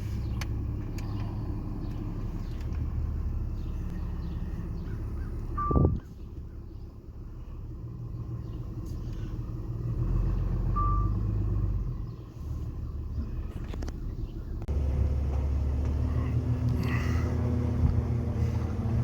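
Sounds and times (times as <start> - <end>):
vehicle engine rumbling: 0.0 - 19.0
short beep: 5.6 - 6.0, 10.8 - 11.2.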